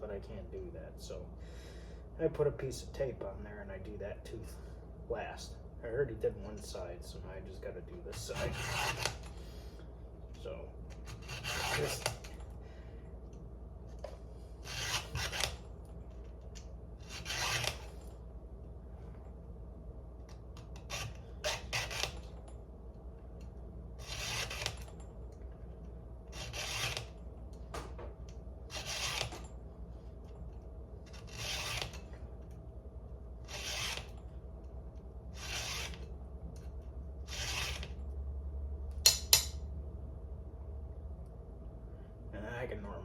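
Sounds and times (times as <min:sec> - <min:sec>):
file rasping on saw chain: 0:08.2 - 0:09.2, 0:11.1 - 0:12.2, 0:14.6 - 0:15.6, 0:17.0 - 0:17.9, 0:24.0 - 0:24.8, 0:26.4 - 0:27.0, 0:28.7 - 0:29.3, 0:31.1 - 0:32.0, 0:33.5 - 0:34.1, 0:35.4 - 0:36.0, 0:37.3 - 0:37.9.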